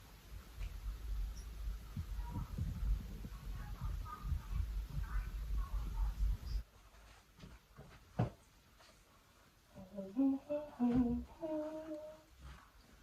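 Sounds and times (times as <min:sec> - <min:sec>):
person humming a tune: 0:09.8 - 0:12.3.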